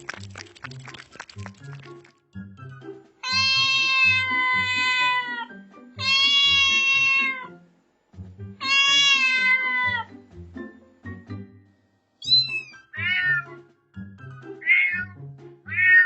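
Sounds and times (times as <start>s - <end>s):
background music: 0.0s - 16.0s
cat meowing: 3.2s - 7.5s, 8.6s - 10.1s, 12.3s - 13.5s, 14.6s - 16.0s.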